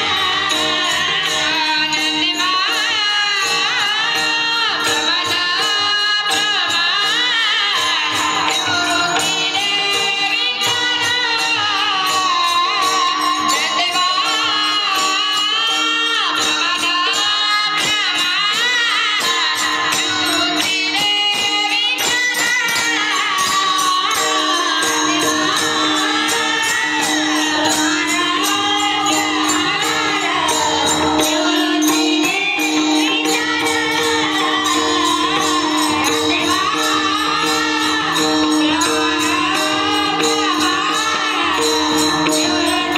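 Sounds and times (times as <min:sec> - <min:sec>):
small hand cymbals: 0:00.0 - 0:42.9.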